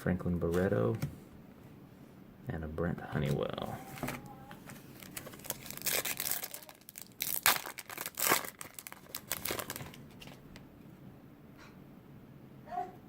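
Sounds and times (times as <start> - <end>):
quiet handling: 0.0 - 1.8, 2.8 - 5.8
wrapper tearing and crinkling: 3.8 - 10.6.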